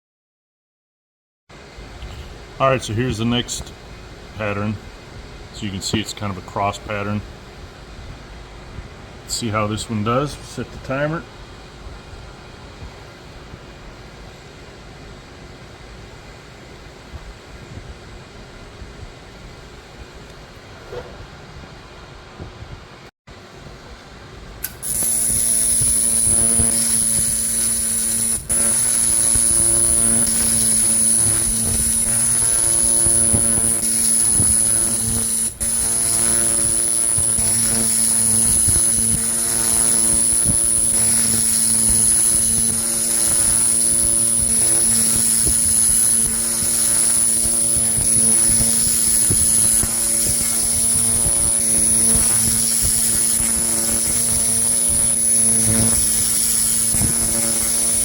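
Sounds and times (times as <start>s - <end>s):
machine hum: 1.6s - 58.0s
laser cleaner hissing: 24.6s - 58.0s.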